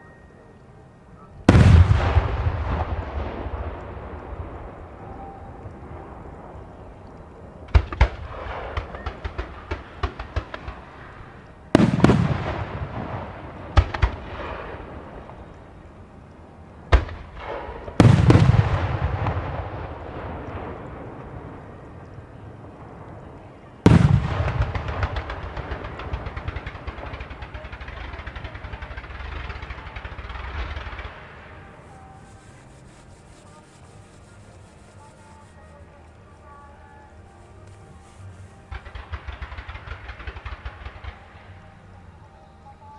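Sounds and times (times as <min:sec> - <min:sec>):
fireworks booming: 0:01.4 - 0:07.0, 0:07.6 - 0:15.5, 0:16.9 - 0:34.2, 0:38.6 - 0:41.6
rapid fireworks crackling: 0:01.4 - 0:42.9.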